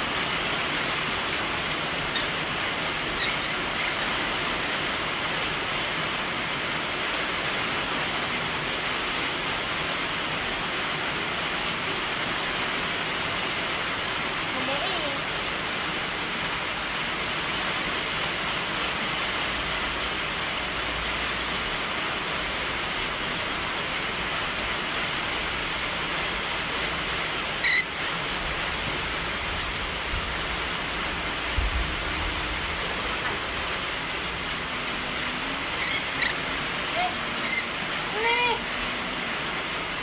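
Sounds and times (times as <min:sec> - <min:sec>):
high-pitched squeak: 0:02.1 - 0:02.4, 0:03.2 - 0:04.1, 0:27.6 - 0:27.9, 0:35.8 - 0:36.4, 0:37.0 - 0:38.7.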